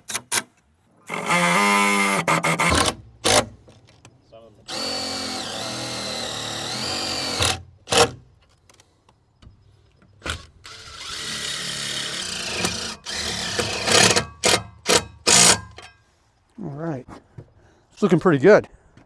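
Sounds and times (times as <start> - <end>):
power drill driving screws: 1.1 - 3.6, 4.7 - 8.3, 10.2 - 15.9.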